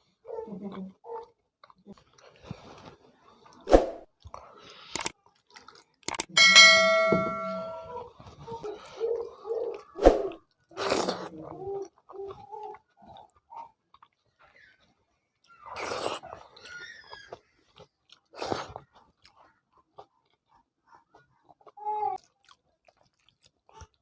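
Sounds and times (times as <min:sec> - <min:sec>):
metal dish ringing: 0:06.4 - 0:08.0
tableware clinking: 0:06.4 - 0:08.0.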